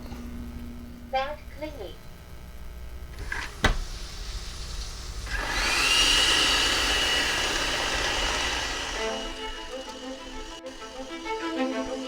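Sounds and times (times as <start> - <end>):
robot vacuum motor whine: 3.1 - 12.0.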